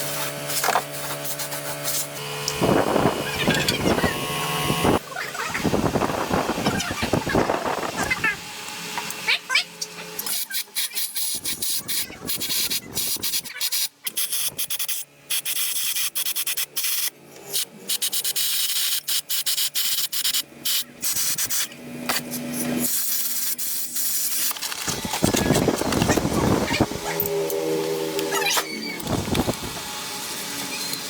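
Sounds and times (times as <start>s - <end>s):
sanding back and forth: 0.0s - 2.2s.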